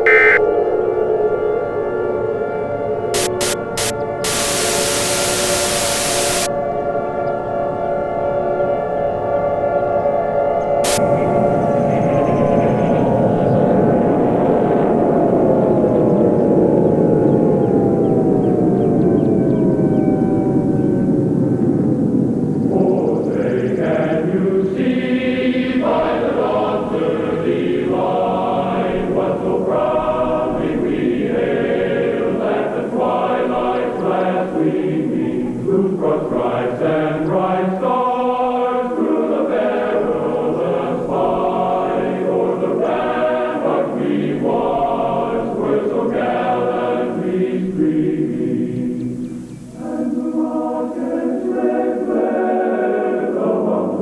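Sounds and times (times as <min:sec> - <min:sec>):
choir singing an anthem: 0:00.0 - 0:00.4, 0:03.2 - 0:06.6, 0:10.8 - 0:16.4, 0:22.6 - 0:54.0.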